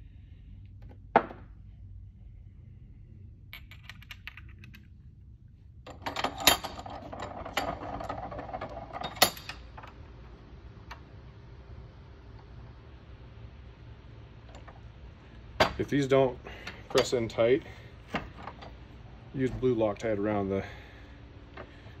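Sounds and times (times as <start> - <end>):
small metal parts clinking: 3.5 - 4.9, 5.9 - 9.9.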